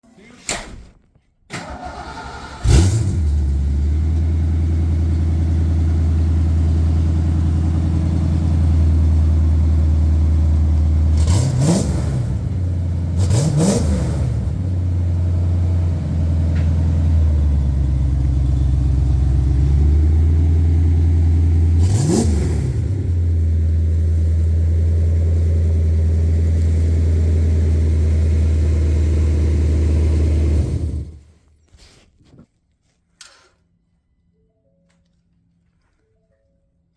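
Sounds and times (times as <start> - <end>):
engine idling and revving: 1.7 - 31.4.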